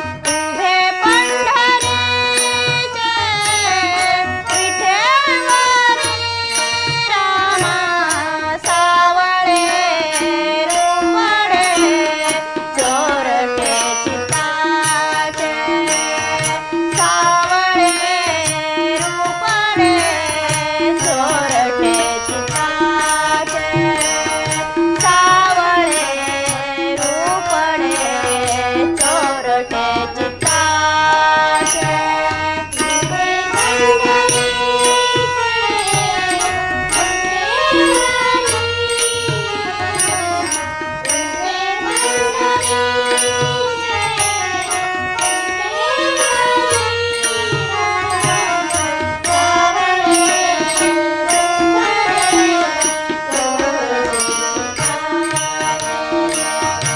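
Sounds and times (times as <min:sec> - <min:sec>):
steady percussion beat: 0:13.6 - 0:56.9
gliding devotional melody: 0:26.1 - 0:56.9.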